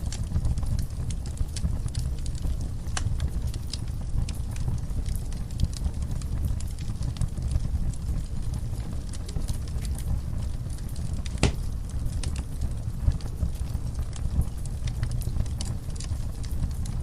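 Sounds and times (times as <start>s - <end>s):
wood fire crackling: 0.0s - 17.0s
fire pop: 10.7s - 14.2s.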